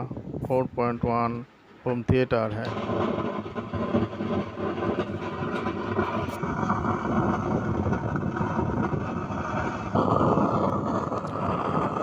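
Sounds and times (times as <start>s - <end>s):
distorted bass woofer crackling: 2.5s - 12.0s.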